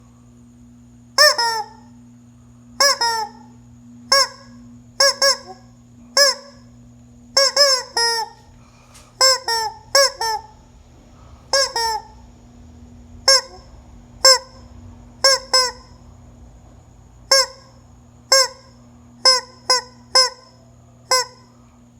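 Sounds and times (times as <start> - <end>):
hen squawking: 7.4 - 8.5, 9.2 - 10.6, 11.5 - 12.2, 13.3 - 14.6.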